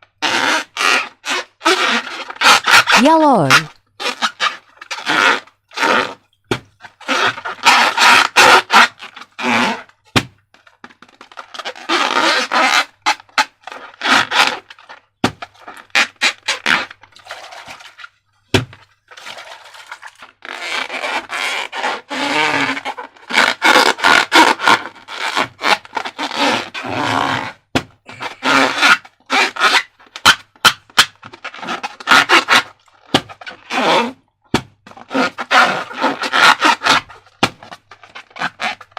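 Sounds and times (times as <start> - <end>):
slime and balloons squishing: 2.7 - 3.7.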